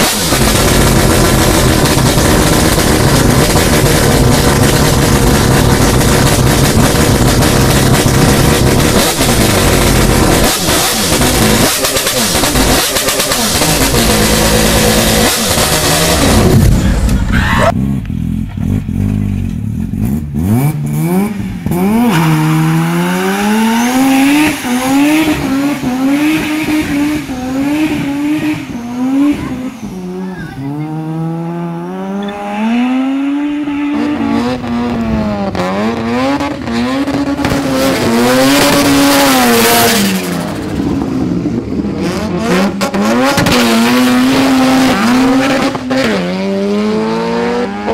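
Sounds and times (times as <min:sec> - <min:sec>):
car engine revving: 0:00.0 - 0:47.9
loud rushing noise: 0:21.0 - 0:42.8.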